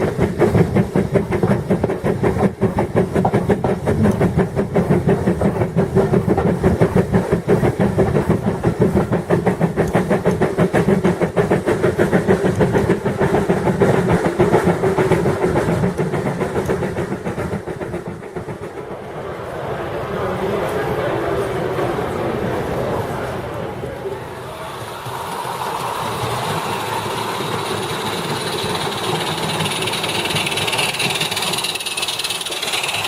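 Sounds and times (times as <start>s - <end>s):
steam locomotive beats: 0.0s - 33.0s
steam hissing: 24.2s - 33.0s.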